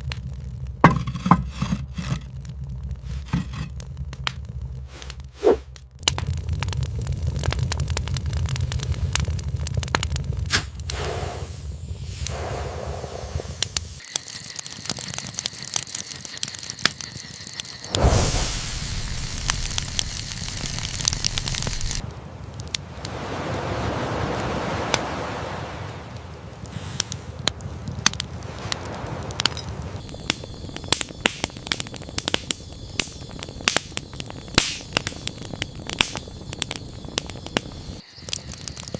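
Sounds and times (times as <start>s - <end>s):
low rumble: 0.0s - 14.0s, 17.9s - 23.9s
campfire crackling and popping: 0.0s - 38.9s.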